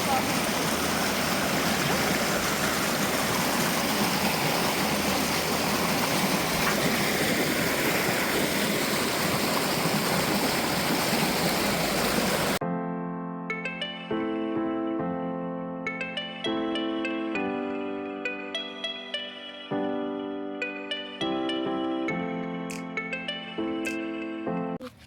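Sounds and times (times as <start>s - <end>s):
rushing stream water: 0.0s - 12.6s
soft piano music: 12.6s - 24.8s.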